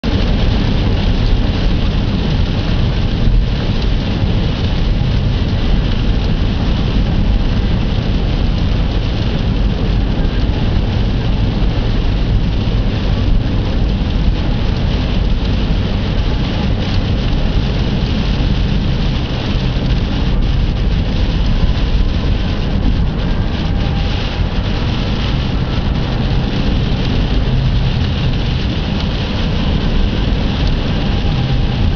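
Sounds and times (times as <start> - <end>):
wind and rain rushing: 0.0 - 31.9
wind buffeting microphone: 0.0 - 31.9.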